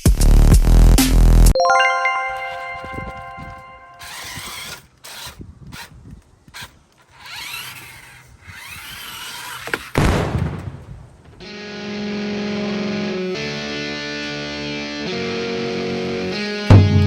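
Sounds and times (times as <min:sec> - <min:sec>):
toy car motor whining: 0:04.0 - 0:10.0
electric guitar music: 0:11.4 - 0:17.0.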